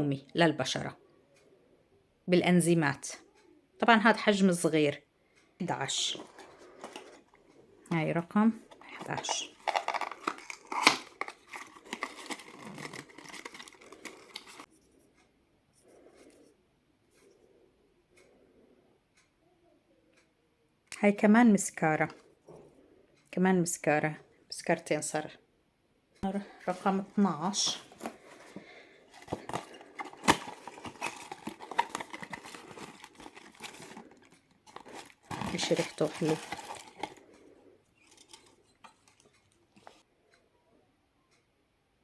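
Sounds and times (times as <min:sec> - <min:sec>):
cardboard and paper packaging torn: 0:09.2 - 0:14.7, 0:29.1 - 0:37.2.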